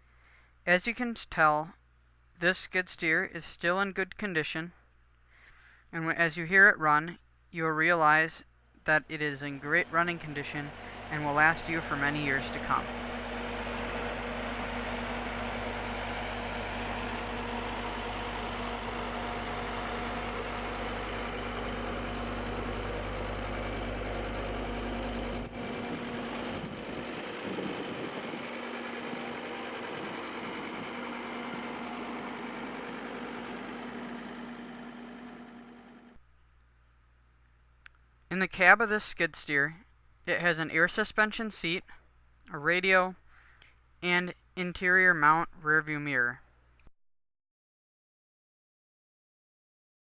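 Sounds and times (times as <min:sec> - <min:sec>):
diesel engine running: 0:09.4 - 0:36.2.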